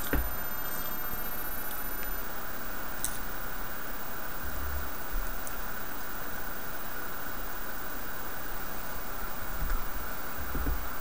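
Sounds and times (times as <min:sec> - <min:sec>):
steady background hiss: 0:00.0 - 0:11.0.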